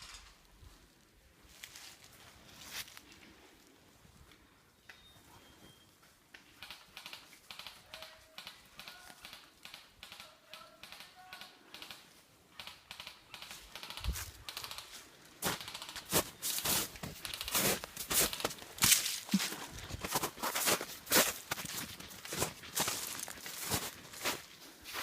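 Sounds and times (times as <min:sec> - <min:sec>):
footsteps on dry ground cover: 0:01.5 - 0:03.6, 0:13.5 - 0:25.0.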